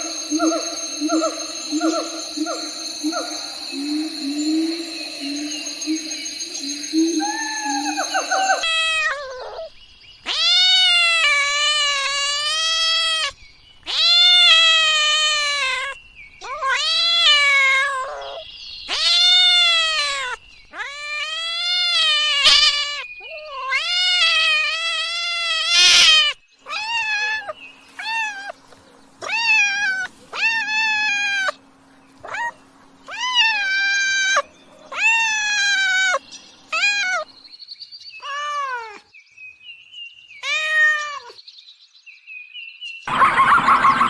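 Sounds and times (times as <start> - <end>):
cat meowing: 7.2 - 9.7, 10.3 - 13.3, 13.9 - 28.6, 29.2 - 31.6, 32.2 - 37.3, 38.2 - 39.0, 40.4 - 41.4.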